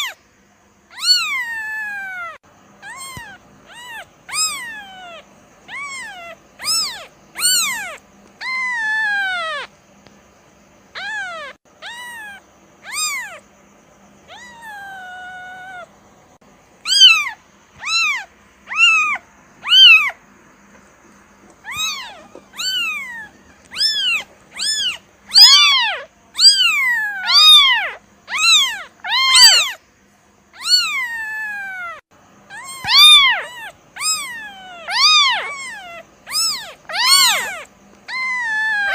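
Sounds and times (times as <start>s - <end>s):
kitten meowing: 0.9s - 9.7s, 10.9s - 13.4s, 14.3s - 15.9s, 16.8s - 20.2s, 21.6s - 29.8s, 30.6s - 38.9s.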